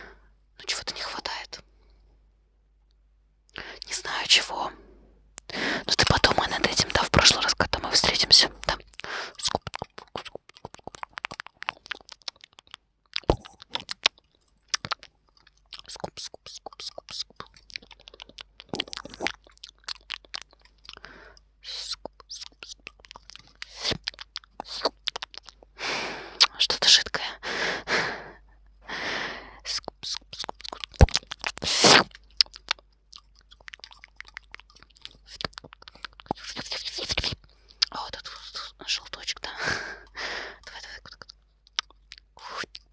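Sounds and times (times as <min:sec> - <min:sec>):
crunching eating clicks: 0:06.1 - 0:25.8, 0:29.8 - 0:39.6, 0:40.6 - 0:42.9.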